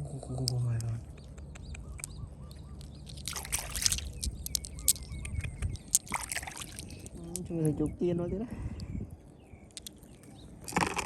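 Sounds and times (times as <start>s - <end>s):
small birds chirping: 0.0s - 11.0s
scattered clicks: 2.8s - 6.2s.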